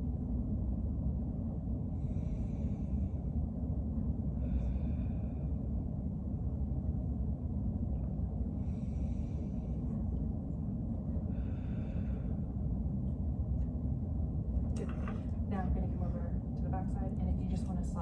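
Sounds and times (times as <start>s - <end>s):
steady low rumble: 0.0s - 18.0s
person breathing deeply: 2.0s - 3.4s, 4.3s - 6.0s, 8.6s - 10.2s, 11.2s - 12.8s.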